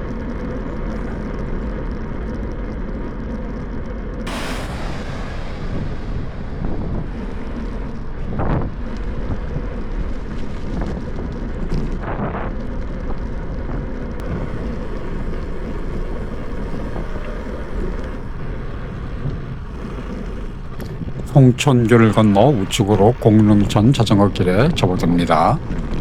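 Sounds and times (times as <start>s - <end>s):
wind buffeting microphone: 4.3s - 12.6s, 13.5s - 26.0s
road noise: 14.2s - 26.0s.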